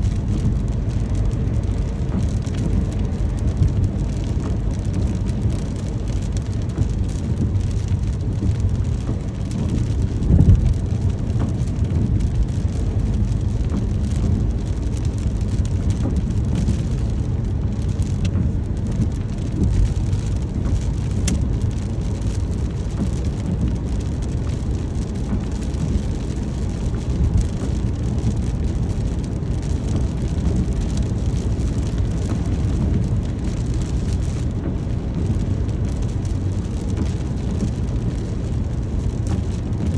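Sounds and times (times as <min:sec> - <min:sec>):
rain falling: 0:00.0 - 0:39.9.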